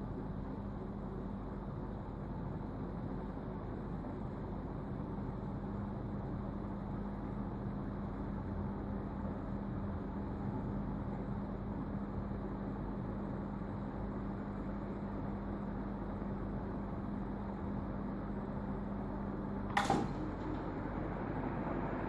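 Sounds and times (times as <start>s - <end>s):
ceiling fan humming: 0.0s - 22.0s
sharp click: 19.7s - 20.7s.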